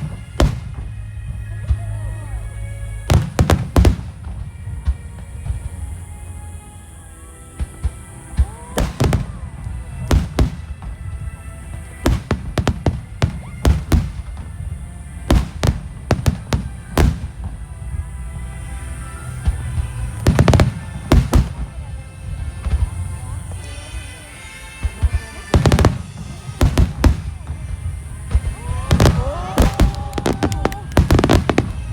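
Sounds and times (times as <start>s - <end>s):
background music: 0.0s - 31.9s
firework shells bursting: 24.9s - 31.9s.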